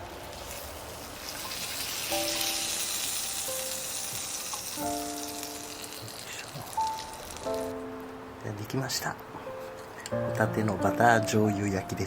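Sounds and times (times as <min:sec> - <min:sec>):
scallops sizzling in butter: 0:00.0 - 0:07.8.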